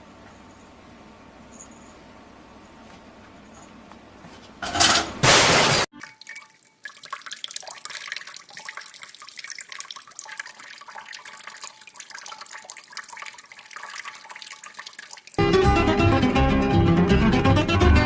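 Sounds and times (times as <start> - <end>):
water dripping and splashing: 5.8 - 15.4.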